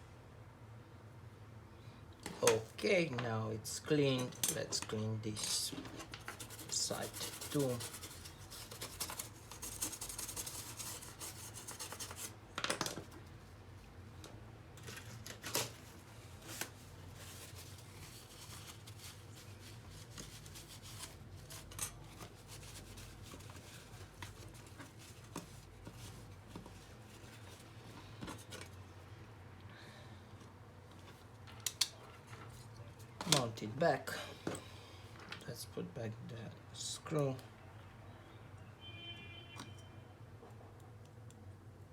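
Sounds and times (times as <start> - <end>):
scrubbing laptop part: 5.3 - 12.3.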